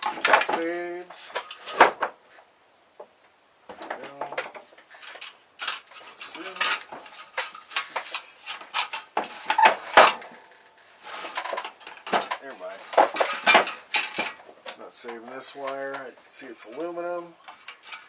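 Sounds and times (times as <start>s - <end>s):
metal parts clinking and clattering: 0.0s - 2.0s, 3.8s - 10.6s, 11.2s - 14.5s, 16.7s - 18.0s.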